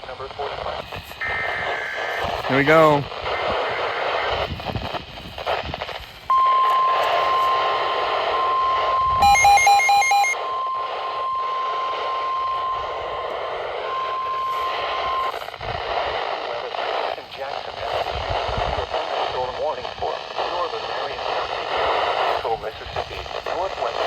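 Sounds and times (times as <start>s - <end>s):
radio static: 0.0s - 24.0s
quick beeps: 6.3s - 15.3s
steady alarm tone: 6.3s - 15.4s.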